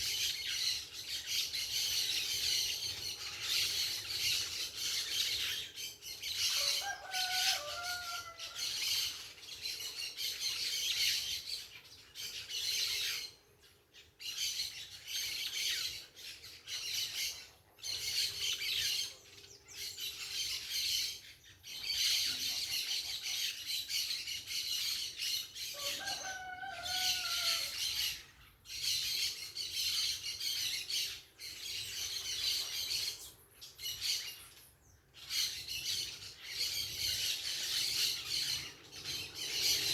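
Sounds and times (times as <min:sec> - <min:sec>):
parakeets chattering and screeching: 0:19.8 - 0:34.5, 0:35.2 - 0:39.9.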